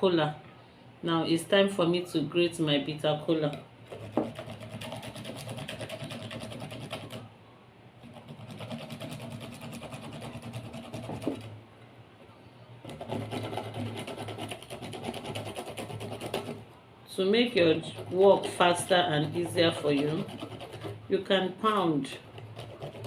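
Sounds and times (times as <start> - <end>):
nut scraping on a grater: 12.9 - 16.6, 17.4 - 21.1, 21.7 - 23.0.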